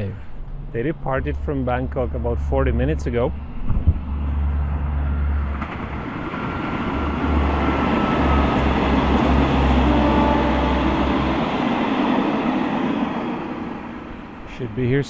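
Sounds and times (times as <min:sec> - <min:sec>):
train rumbling past: 0:00.0 - 0:15.0.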